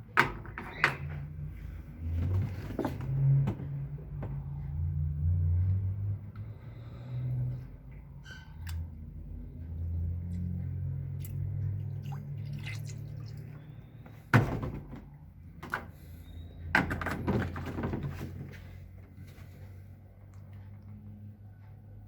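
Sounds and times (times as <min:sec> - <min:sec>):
knocks and rattles: 0:14.3 - 0:16.0, 0:16.7 - 0:18.7.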